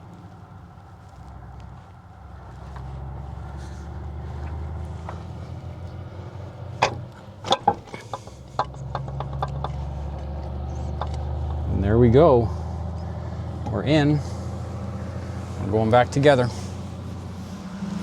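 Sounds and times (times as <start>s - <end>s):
sharp metallic clicks and knocks: 4.4s - 11.8s.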